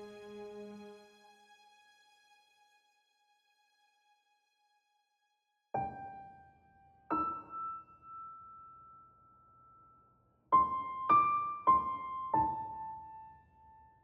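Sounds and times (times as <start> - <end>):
slow piano notes: 7.1 - 9.0.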